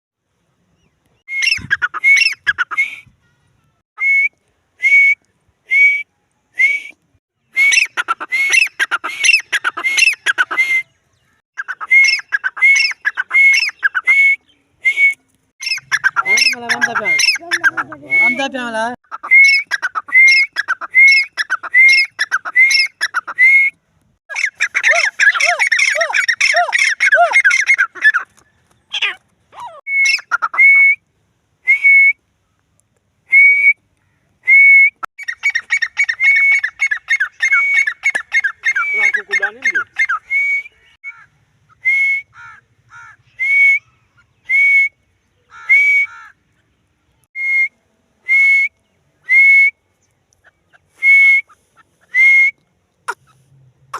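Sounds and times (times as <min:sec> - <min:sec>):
fast chattering bird calls: 0:15.6 - 0:18.4, 0:24.3 - 0:29.2, 0:35.2 - 0:40.2.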